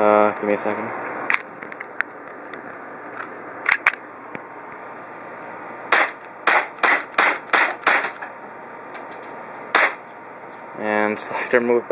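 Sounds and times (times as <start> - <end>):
airsoft pistol shots: 5.9 - 8.2, 9.7 - 10.0.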